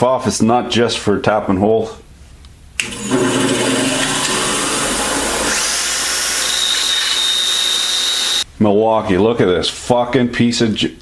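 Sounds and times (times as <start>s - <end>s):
cordless drill motor running: 2.8s - 8.4s.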